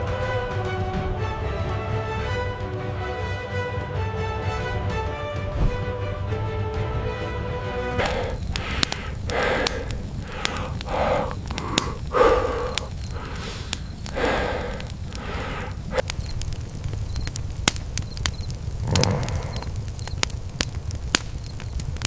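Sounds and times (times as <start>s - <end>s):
low rumble: 5.4s - 6.3s
breathy vocal sounds: 8.0s - 16.2s, 18.8s - 20.0s
crackling clicks: 8.0s - 22.0s.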